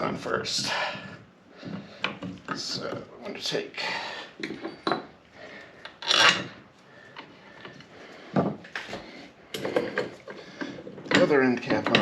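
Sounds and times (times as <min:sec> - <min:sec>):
metal parts clicking and knocking: 0:09.6 - 0:12.0.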